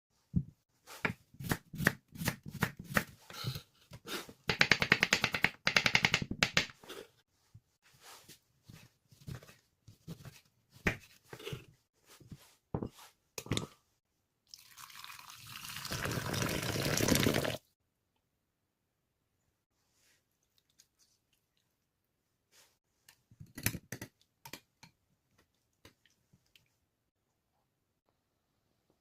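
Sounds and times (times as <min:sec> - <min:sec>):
knife chopping on cutting board: 0:01.0 - 0:03.2.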